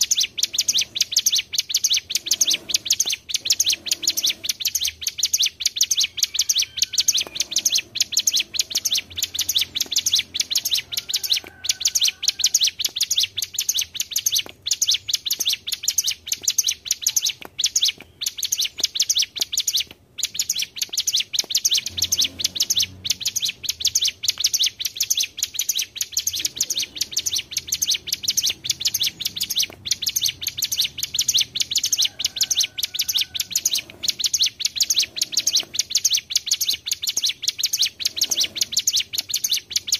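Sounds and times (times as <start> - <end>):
birds singing rolling trills: 0.0 - 39.9.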